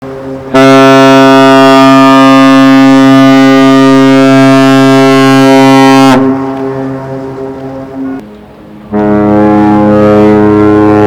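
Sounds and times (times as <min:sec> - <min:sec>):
ship's horn blast: 0:00.0 - 0:11.0
fainter horn note: 0:08.9 - 0:11.0.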